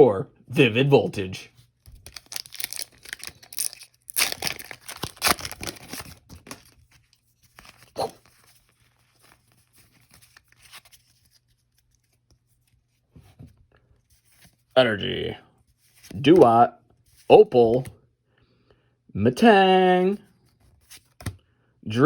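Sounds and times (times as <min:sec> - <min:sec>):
wrapper and cards rustling: 0:01.6 - 0:14.8, 0:15.7 - 0:17.9, 0:20.3 - 0:21.4
foil wrapper crackle: 0:01.9 - 0:06.8
foil wrapper ripping: 0:01.9 - 0:06.8.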